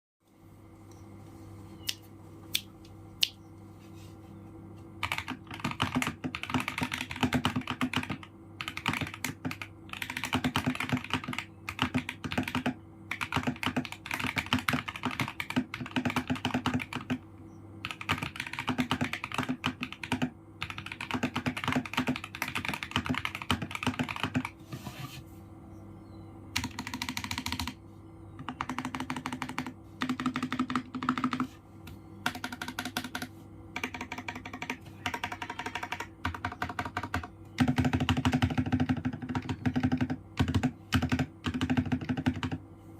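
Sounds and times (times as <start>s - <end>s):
faint steady hum: 0.2s - 42.9s
mechanical keyboard typing: 5.0s - 17.2s, 17.8s - 24.6s, 26.6s - 27.8s, 28.4s - 31.5s, 32.2s - 42.6s.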